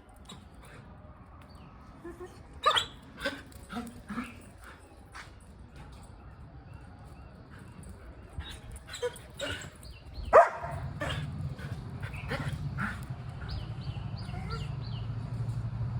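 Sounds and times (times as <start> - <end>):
dog barking and yipping: 2.6 - 4.4, 8.9 - 9.7, 10.3 - 13.6.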